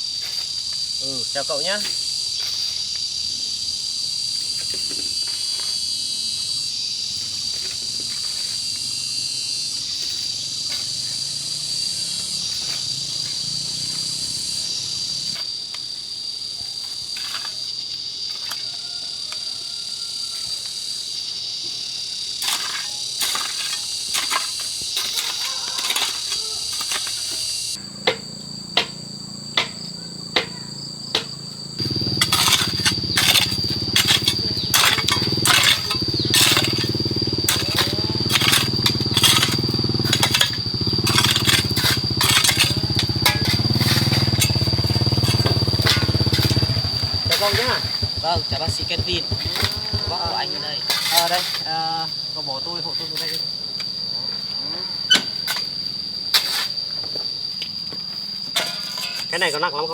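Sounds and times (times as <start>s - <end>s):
insects droning: 0.0s - 59.9s
sharp knocks: 29.6s - 36.9s.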